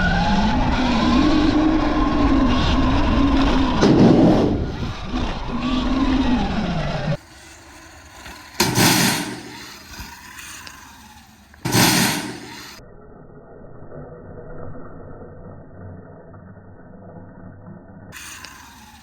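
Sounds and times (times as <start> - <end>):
loud rushes of noise: 0.0 - 12.8
electric dirt bike riding: 0.0 - 19.0.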